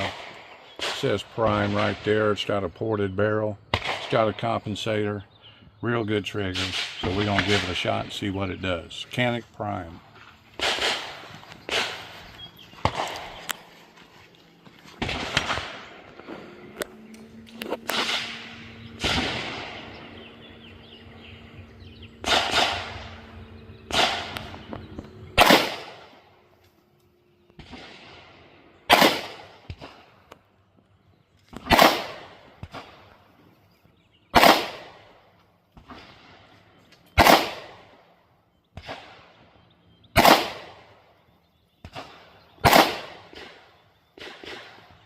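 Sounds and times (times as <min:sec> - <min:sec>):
pistol shots with echo: 0:03.7 - 0:04.7, 0:06.4 - 0:08.8, 0:10.6 - 0:13.7, 0:15.0 - 0:16.9, 0:17.7 - 0:26.3, 0:27.6 - 0:30.2, 0:31.6 - 0:33.1, 0:34.3 - 0:36.3, 0:37.1 - 0:38.0, 0:40.1 - 0:41.1, 0:41.8 - 0:45.0.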